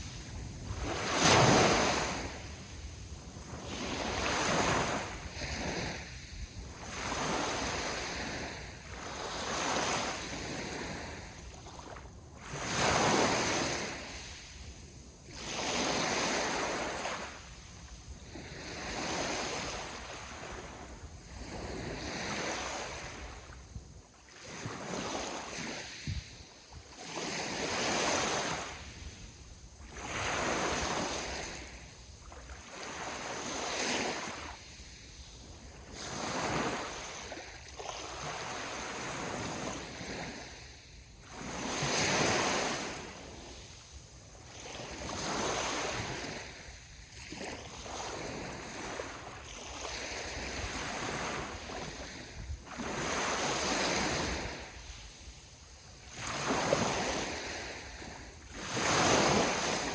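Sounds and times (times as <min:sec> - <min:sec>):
sea waves breaking on shore: 0:00.0 - 0:59.9.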